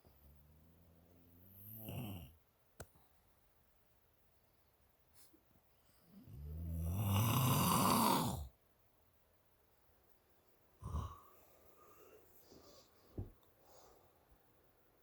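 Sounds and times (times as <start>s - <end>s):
person snoring: 1.4s - 2.4s, 6.2s - 8.5s, 10.8s - 11.3s.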